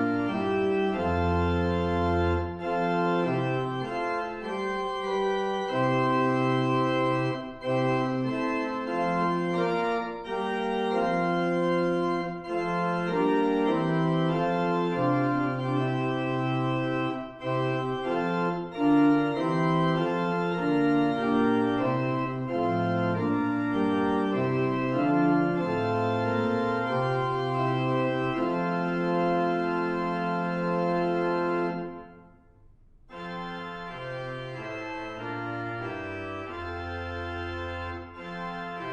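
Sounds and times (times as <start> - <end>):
organ playing hymn chords: 0.0 - 32.5, 33.1 - 38.9.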